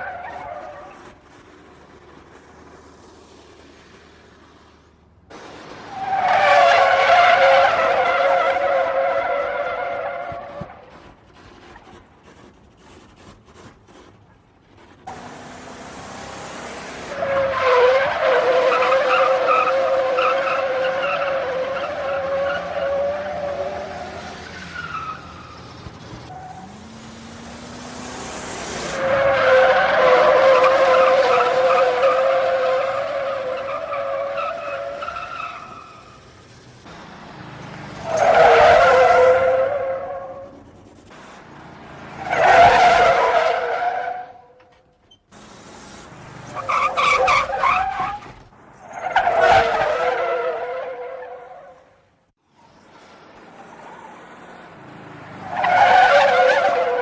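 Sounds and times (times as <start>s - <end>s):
car tyres squealing: 0.0s - 4.7s, 5.3s - 57.0s
car engine revving: 15.0s - 44.0s.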